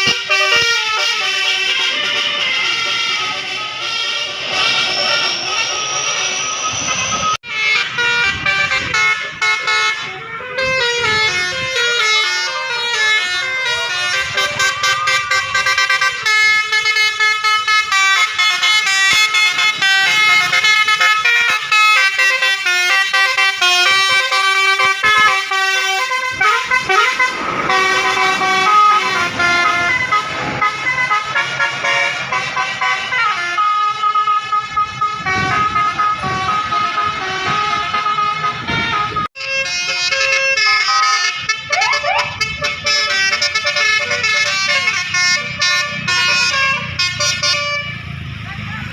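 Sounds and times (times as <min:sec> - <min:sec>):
multi-tone bus air horn melody: 0:00.0 - 0:48.2
rushing noise: 0:03.6 - 0:09.1, 0:26.6 - 0:30.8.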